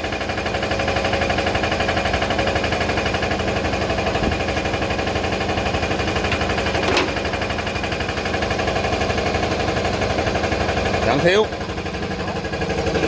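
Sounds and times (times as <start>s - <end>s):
machine clattering: 5.9s - 7.8s.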